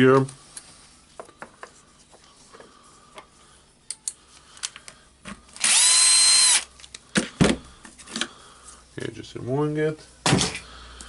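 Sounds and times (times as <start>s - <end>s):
electric screwdriver running: 5.6s - 6.7s.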